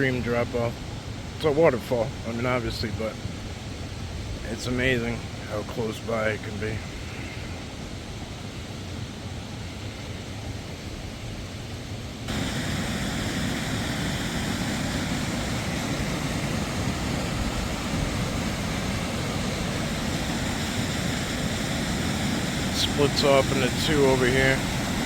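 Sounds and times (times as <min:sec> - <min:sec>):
waterfall rushing: 0:12.2 - 0:25.0.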